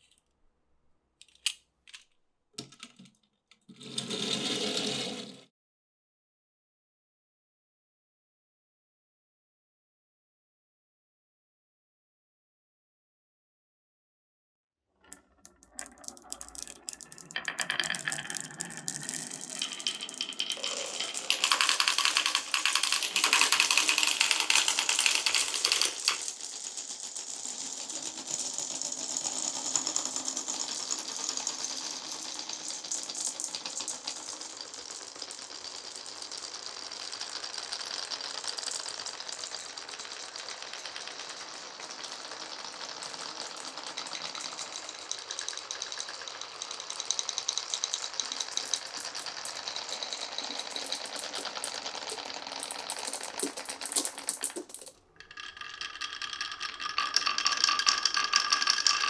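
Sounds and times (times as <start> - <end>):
marbles rattling through wooden run: 15.1 - 59.0.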